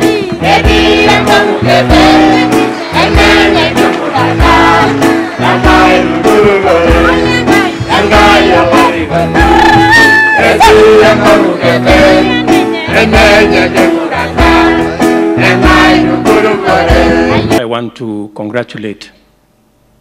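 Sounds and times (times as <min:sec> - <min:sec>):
choir singing: 0:00.0 - 0:09.8, 0:10.4 - 0:17.6
bass and drum beat: 0:00.0 - 0:17.6
voice holding long high note: 0:09.3 - 0:11.0.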